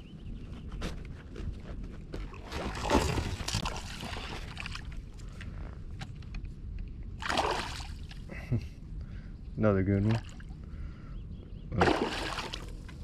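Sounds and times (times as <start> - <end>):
water splashing and sloshing: 2.1 - 8.4, 10.0 - 10.6, 11.7 - 13.0.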